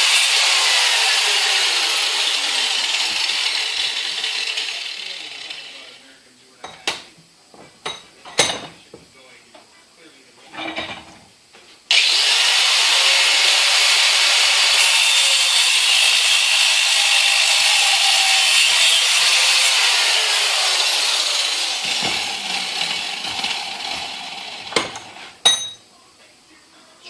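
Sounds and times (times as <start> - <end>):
grinder grinding metal: 0.0 - 6.0, 11.9 - 25.8.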